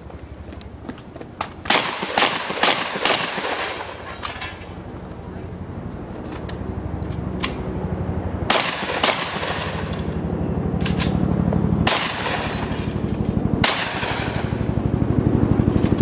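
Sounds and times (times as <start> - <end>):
faint gunshots: 1.7 - 4.0, 8.5 - 10.1, 11.8 - 12.9, 13.6 - 14.6
shotgun blasts: 1.7 - 4.4, 8.5 - 10.1, 11.8 - 13.0, 13.6 - 14.6.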